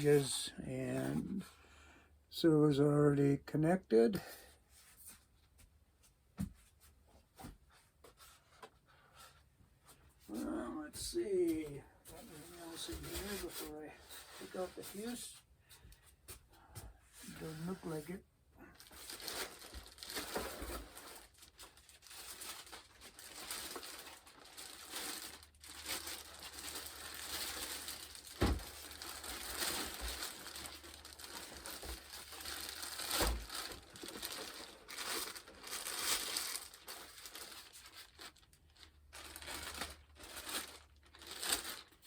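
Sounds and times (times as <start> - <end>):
plastic packaging crinkling: 18.8 - 42.0.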